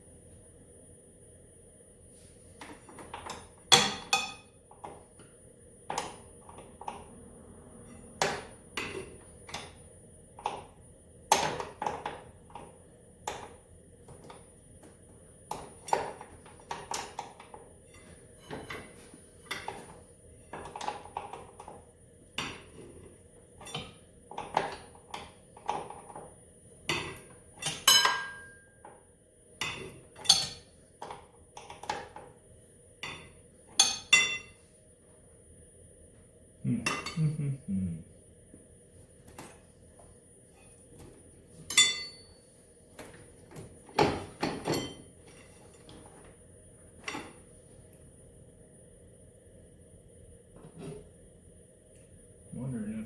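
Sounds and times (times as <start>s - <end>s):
ringing metal clank: 27.7s - 28.7s, 41.7s - 42.3s.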